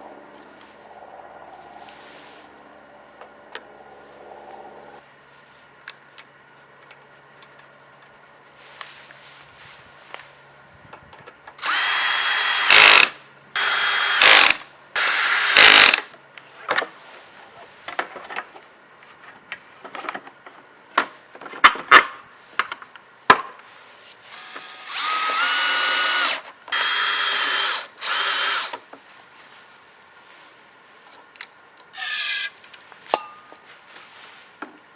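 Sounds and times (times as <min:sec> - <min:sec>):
power drill whining: 0:11.6 - 0:16.1, 0:24.3 - 0:28.8, 0:32.0 - 0:32.5.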